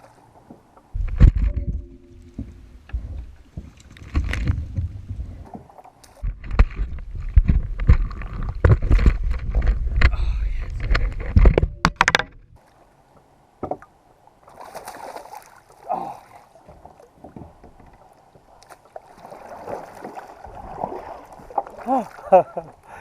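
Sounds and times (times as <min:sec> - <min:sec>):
low rumble of water: 0:00.0 - 0:23.0
knocks and thuds on kayak hull: 0:10.9 - 0:12.4.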